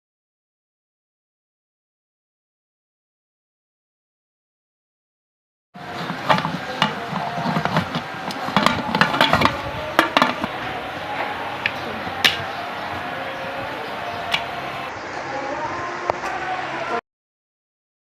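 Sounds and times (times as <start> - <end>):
metal utensil scraping a pot: 5.8 - 10.7.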